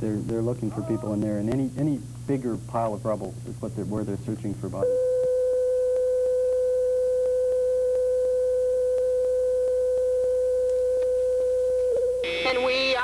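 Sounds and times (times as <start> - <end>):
electronic test tone: 4.8 - 13.0.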